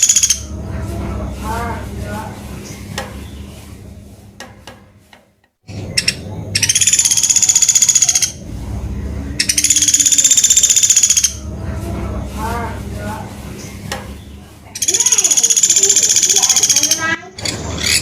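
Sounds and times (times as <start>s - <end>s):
woodpecker high-pitched trilling calls: 0.0s - 0.5s, 5.9s - 8.4s, 9.4s - 11.4s, 14.8s - 18.0s.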